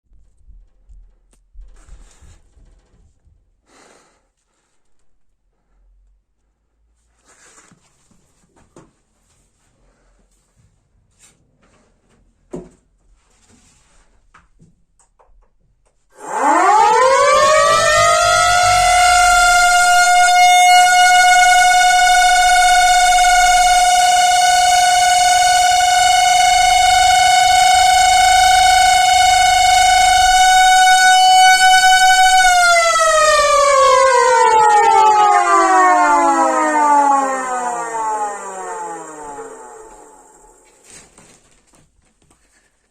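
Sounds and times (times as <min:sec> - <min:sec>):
siren wailing: 0:16.2 - 0:40.8.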